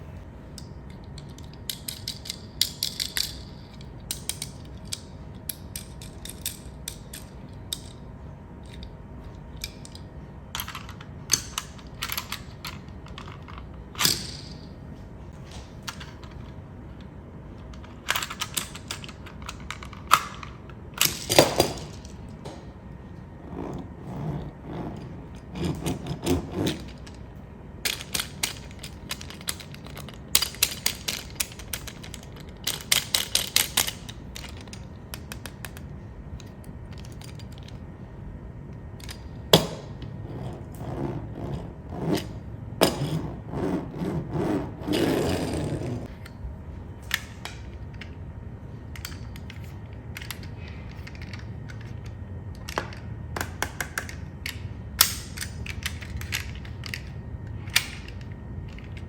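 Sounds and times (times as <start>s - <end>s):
small mechanical parts clicking: 0.6s - 8.0s, 15.9s - 22.6s, 27.8s - 37.8s, 48.9s - 59.0s.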